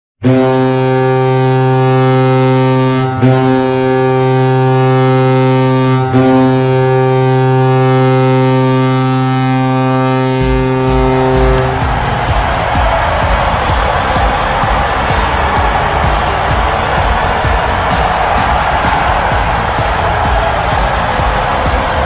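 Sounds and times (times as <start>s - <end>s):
goal horn blast: 0.2s - 22.0s
goal song with heavy drumbeat: 10.4s - 22.0s.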